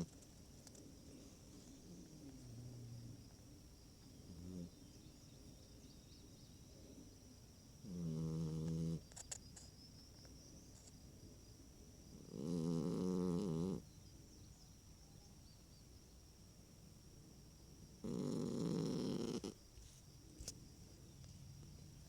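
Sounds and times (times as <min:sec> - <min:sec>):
quiet breathing: 0:00.6 - 0:04.9
dog snoring: 0:07.8 - 0:09.0, 0:12.2 - 0:13.8, 0:18.0 - 0:19.6.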